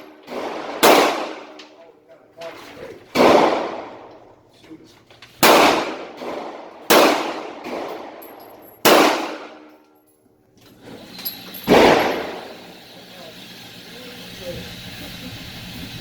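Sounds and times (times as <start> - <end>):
rifle shots: 0.0 - 1.7, 3.1 - 4.2, 5.4 - 9.7, 11.7 - 12.8.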